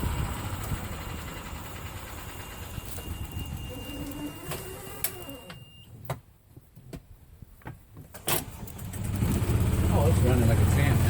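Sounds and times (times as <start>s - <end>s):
cart engine running: 0.0s - 5.4s, 8.4s - 11.0s.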